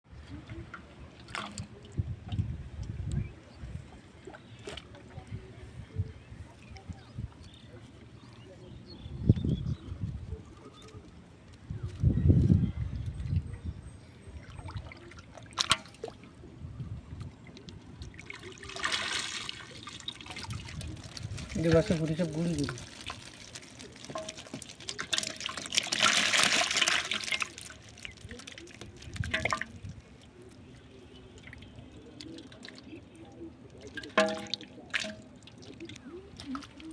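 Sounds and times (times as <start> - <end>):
water trickling: 12.1 - 36.9
brief splash: 18.1 - 21.5
loud water splashing: 18.1 - 29.9
sharp water splash: 18.1 - 29.9, 33.8 - 36.9.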